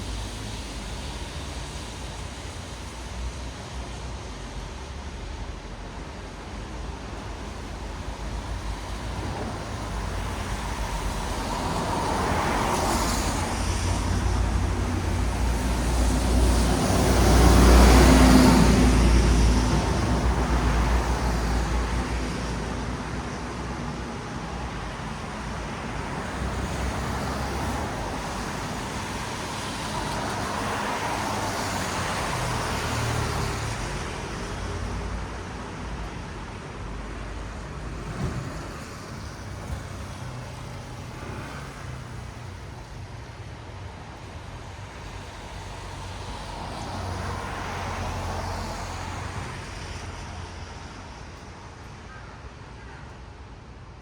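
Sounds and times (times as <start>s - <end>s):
tyres hissing on wet road: 0.0s - 52.7s.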